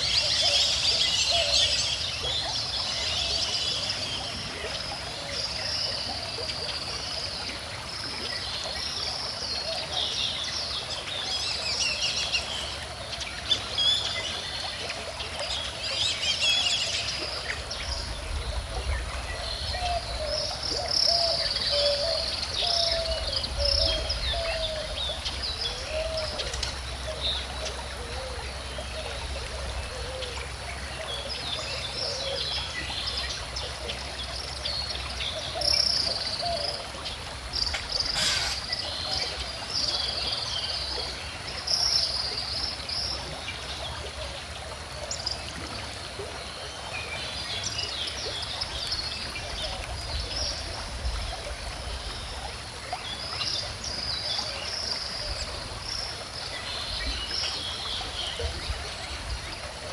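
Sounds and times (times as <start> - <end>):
birds singing and chirping: 0.0 - 4.8, 15.7 - 29.0, 34.5 - 41.0
river water flowing: 0.0 - 59.9.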